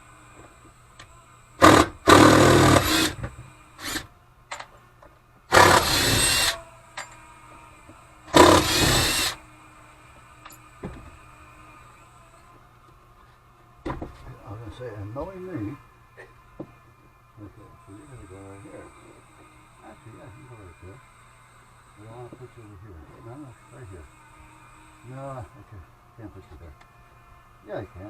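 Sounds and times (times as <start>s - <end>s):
power drill driving screws: 1.6s - 4.1s, 5.5s - 6.6s, 8.3s - 9.4s.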